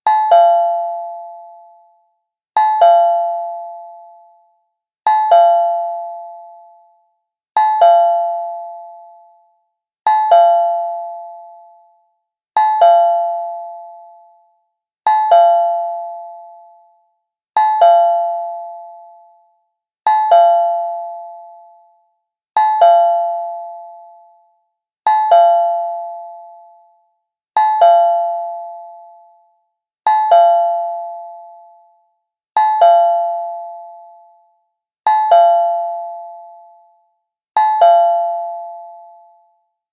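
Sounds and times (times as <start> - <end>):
cartoon doorbell chime: 37.6 - 39.2.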